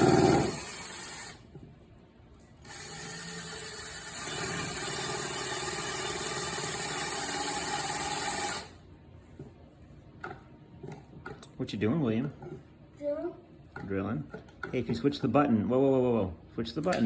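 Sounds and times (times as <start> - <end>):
power drill motor running: 0.0 - 1.4, 2.6 - 8.8.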